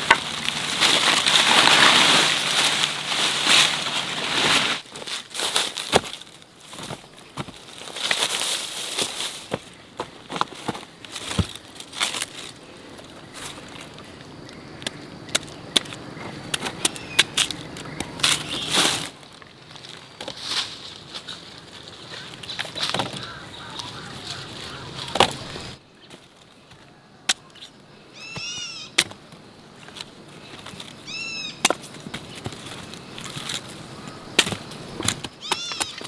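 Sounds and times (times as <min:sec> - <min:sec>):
short high animal calls: 0:28.1 - 0:29.0.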